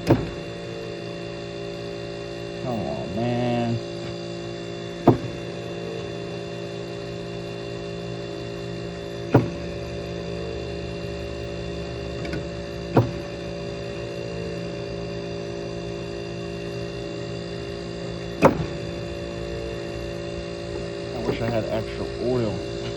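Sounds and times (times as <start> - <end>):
sharp knocks: 0.0 - 0.5, 5.0 - 6.2, 9.3 - 9.8, 12.2 - 13.4, 18.4 - 18.8
air conditioner compressor hum: 0.0 - 22.9.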